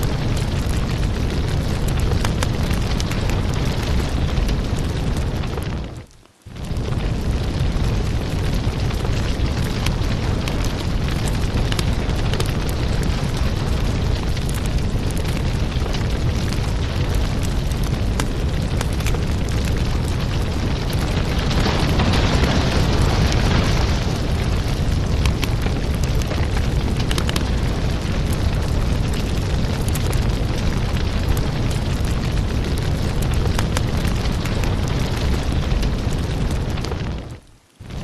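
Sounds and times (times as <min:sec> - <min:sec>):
fire flames rushing: 0:00.0 - 0:38.0
wood crackling and popping: 0:00.0 - 0:38.0
fire hissing: 0:00.2 - 0:38.0.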